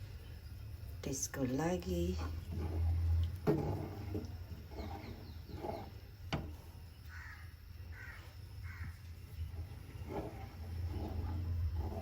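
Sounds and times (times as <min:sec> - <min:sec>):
steady low hum: 0:00.0 - 0:12.0
crow cawing: 0:07.1 - 0:09.0.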